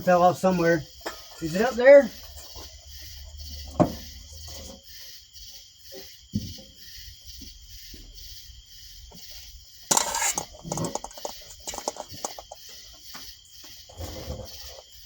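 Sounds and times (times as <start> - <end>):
insects droning: 0.0 - 15.0
loud scraping rustle: 9.9 - 12.8
handling clicks and knocks: 9.9 - 13.8.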